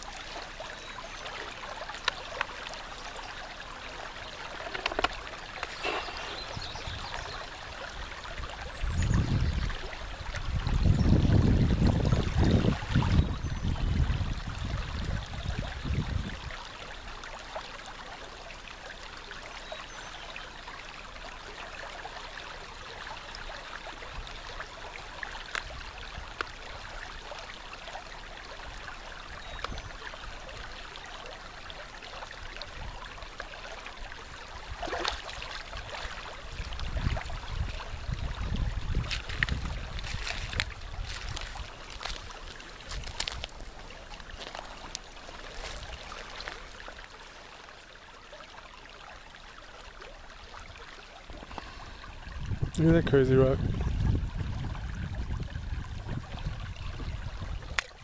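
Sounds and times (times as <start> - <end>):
water flowing: 0.0 - 58.0
faint clicks: 4.6 - 6.2
wind rumble on microphone: 5.9 - 16.6, 35.7 - 43.7, 51.3 - 58.0.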